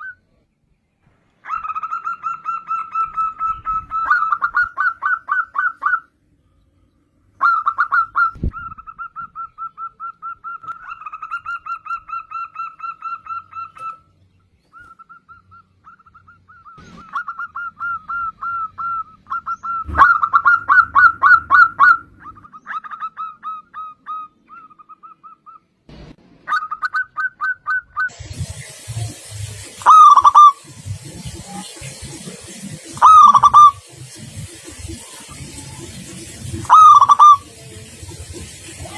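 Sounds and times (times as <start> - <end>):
dove cooing: 14.8 - 25.6, 29.8 - 30.6, 33.0 - 33.8, 36.6 - 37.5
steady hiss: 28.1 - 38.9.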